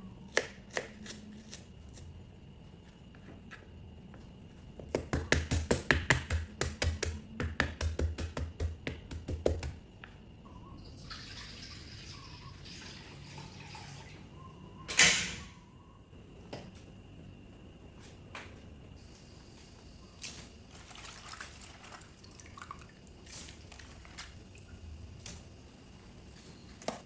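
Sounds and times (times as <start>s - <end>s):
knife chopping on cutting board: 5.0s - 9.8s.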